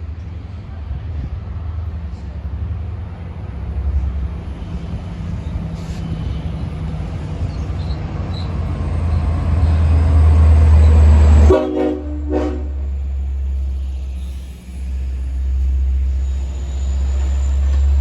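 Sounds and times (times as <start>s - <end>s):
diesel locomotive rumbling: 0.0s - 18.0s
locomotive horn blasts: 11.2s - 13.0s.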